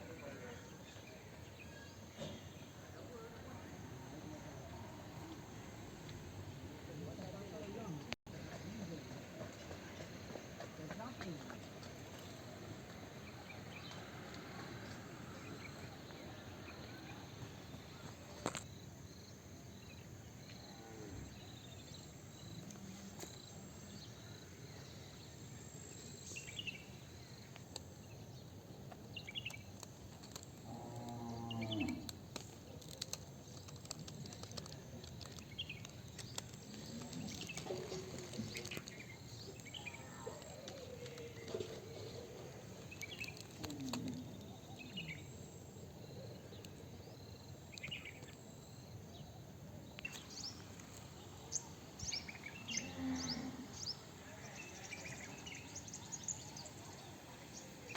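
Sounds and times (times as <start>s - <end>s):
cow mooing: 52.8s - 53.8s.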